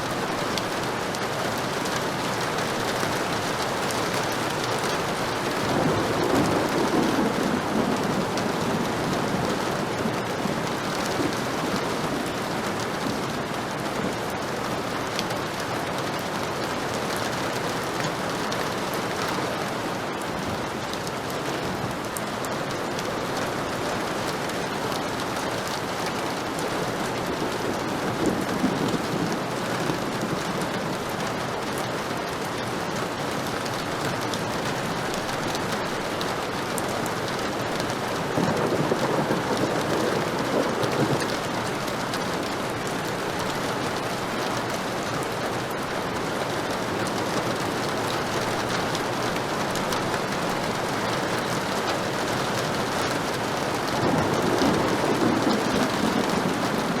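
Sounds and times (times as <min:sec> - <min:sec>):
heavy rain falling: 0:00.0 - 0:57.0
low rolls of thunder: 0:05.6 - 0:14.2, 0:27.0 - 0:31.1, 0:38.2 - 0:42.4, 0:52.9 - 0:57.0.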